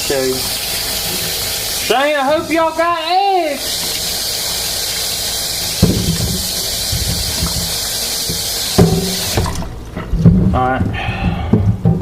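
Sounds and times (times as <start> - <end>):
kitchen faucet running: 0.0 - 9.9
low knocks in sink: 8.8 - 9.5.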